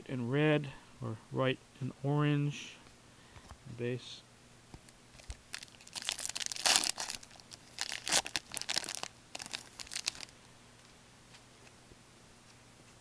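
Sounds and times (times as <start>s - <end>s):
card pack wrapper crinkling and tearing: 5.2s - 10.3s.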